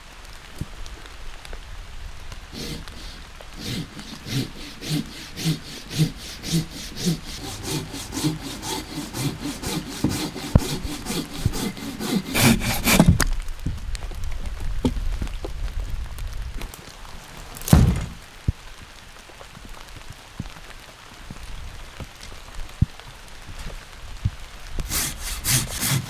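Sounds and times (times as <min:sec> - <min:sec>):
hand saw cutting wood: 0:02.5 - 0:13.3, 0:17.4 - 0:18.2, 0:24.8 - 0:26.0
knocks: 0:17.6 - 0:18.2.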